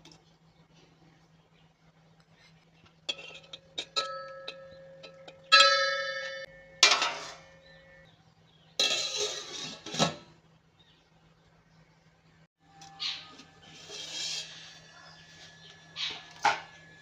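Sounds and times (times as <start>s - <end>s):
metal utensils clinking: 3.1s - 7.8s, 8.8s - 10.3s
rough scraping noises: 6.4s - 8.0s, 8.8s - 10.4s, 13.2s - 16.7s.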